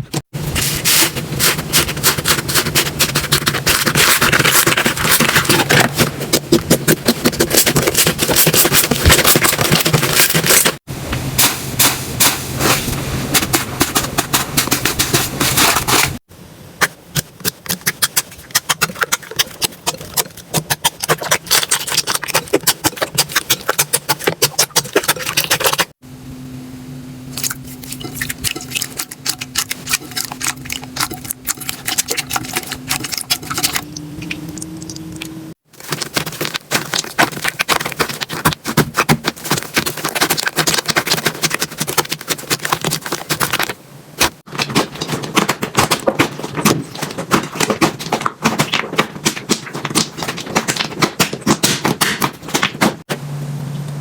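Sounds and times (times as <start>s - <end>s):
slime crackling and popping: 17.2s - 25.9s, 35.8s - 53.0s
faint steady hum: 25.2s - 45.6s, 53.1s - 54.0s.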